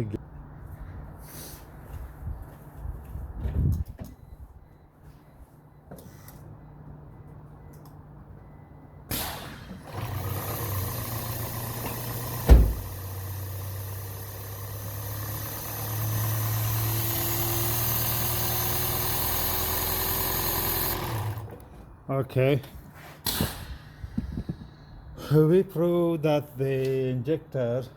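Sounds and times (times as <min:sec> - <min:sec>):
car engine turning over: 0:09.1 - 0:21.8.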